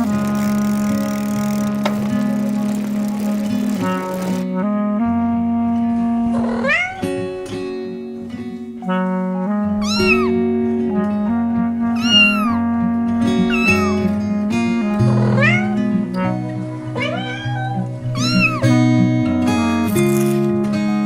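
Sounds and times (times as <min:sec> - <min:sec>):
music of sustained chords: 0:00.0 - 0:12.0, 0:12.6 - 0:21.0
cat meowing: 0:06.4 - 0:07.6, 0:09.8 - 0:10.4, 0:12.0 - 0:12.7, 0:13.4 - 0:14.2, 0:15.1 - 0:18.8.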